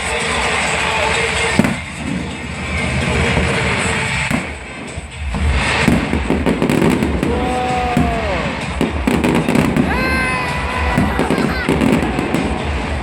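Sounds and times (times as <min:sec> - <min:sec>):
fireworks sharp cracks: 0:00.0 - 0:13.0
fireworks rumbling booms: 0:00.4 - 0:13.0.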